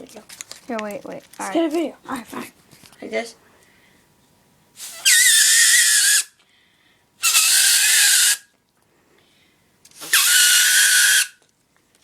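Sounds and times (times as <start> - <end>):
paper whistle shrill squeals: 4.8 - 6.4, 7.2 - 8.5, 10.0 - 11.4.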